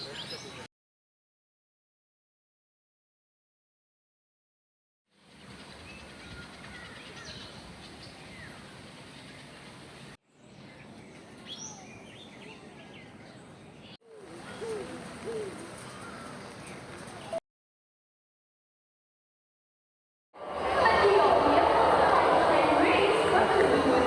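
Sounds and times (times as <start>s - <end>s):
birds chirping: 5.4s - 17.4s
low hooting bird calls: 14.1s - 17.0s.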